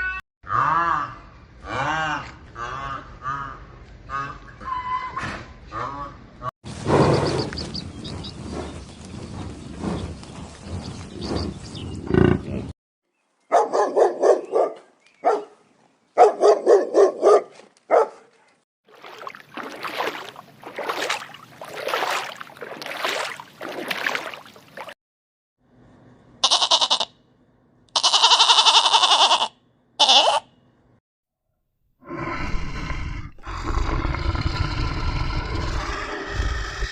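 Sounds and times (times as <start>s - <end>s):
pulsed animal calls: 32.1s - 36.9s.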